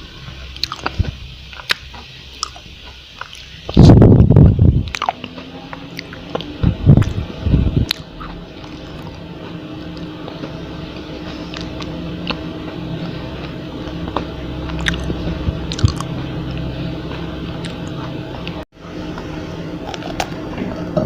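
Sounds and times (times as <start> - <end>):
low hum: 0.0 - 21.0
person chewing crispy food: 0.6 - 3.8, 4.8 - 7.2, 11.4 - 12.4, 13.4 - 16.1, 19.8 - 20.4.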